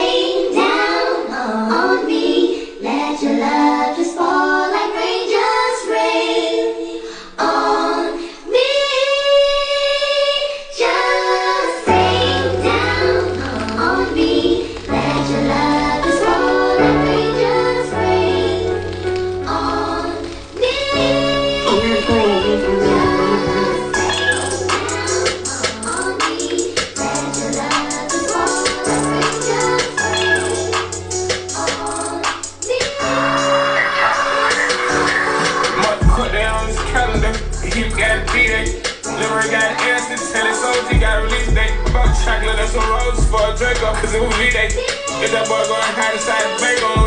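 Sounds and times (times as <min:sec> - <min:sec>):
person singing over music: 0:10.8 - 0:47.0
deep bass line: 0:21.0 - 0:25.0, 0:36.0 - 0:38.7, 0:41.0 - 0:44.8.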